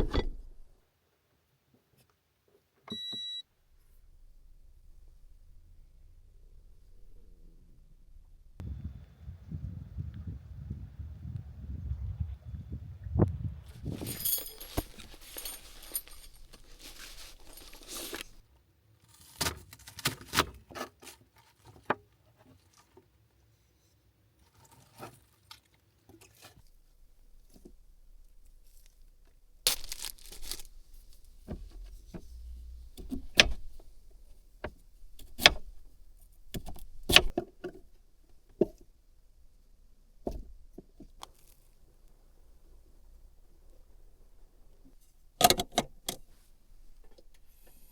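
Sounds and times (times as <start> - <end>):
packaging rustling and tearing: 13.8 - 18.4, 29.7 - 31.4.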